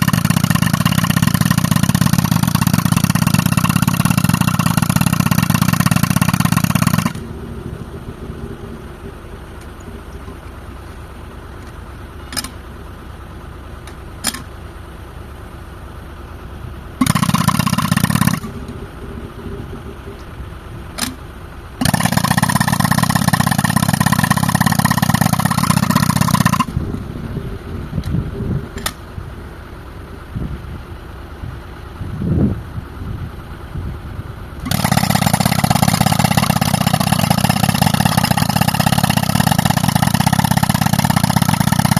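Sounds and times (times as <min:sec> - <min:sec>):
jackhammer hammering rock: 0:00.0 - 0:07.3, 0:17.0 - 0:18.6, 0:21.8 - 0:26.8, 0:34.6 - 0:41.9
tractor engine running: 0:00.0 - 0:41.9
sharp clicks: 0:28.0 - 0:29.0.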